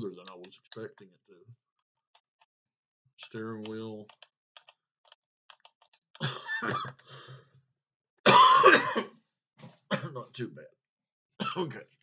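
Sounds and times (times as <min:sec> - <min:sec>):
man coughing: 0:06.2 - 0:07.0, 0:08.3 - 0:09.1, 0:09.9 - 0:10.3, 0:11.4 - 0:11.8.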